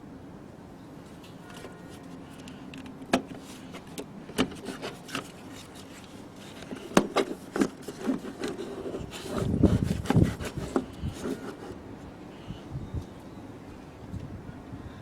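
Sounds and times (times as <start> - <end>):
hands and tools clicking: 2.3 - 11.8.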